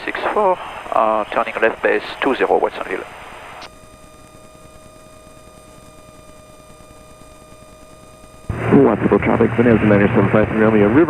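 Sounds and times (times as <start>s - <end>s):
pilot radio call: 0.0s - 5.0s, 8.5s - 11.0s
aircraft cockpit drone: 0.0s - 11.0s
thin steady whine: 0.0s - 11.0s.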